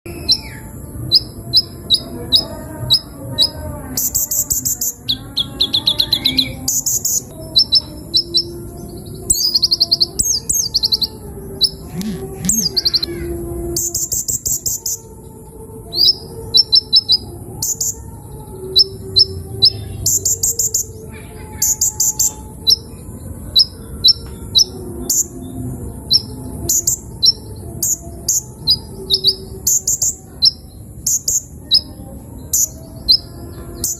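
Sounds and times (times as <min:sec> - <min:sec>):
bird giving high chirps: 0:00.1 - 0:15.1, 0:18.7 - 0:25.4.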